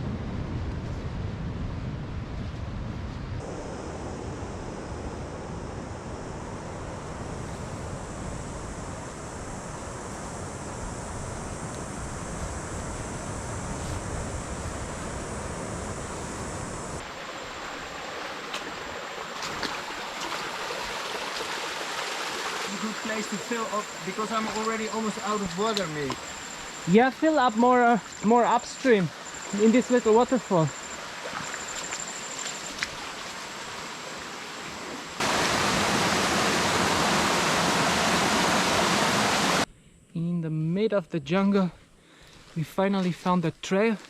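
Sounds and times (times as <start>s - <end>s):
low wind-like rumble: 0.0s - 17.3s
stream rushing: 12.6s - 39.7s.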